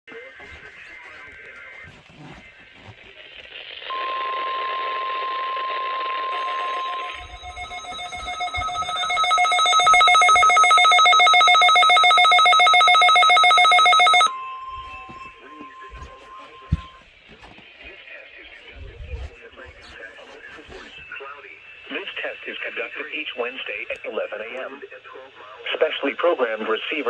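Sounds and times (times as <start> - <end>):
steady beep tone: 3.9 - 17.0
fast pulsing multi-tone alarm: 6.3 - 17.0
warbling two-tone data burst: 6.4 - 16.6
radio hiss: 17.9 - 27.0.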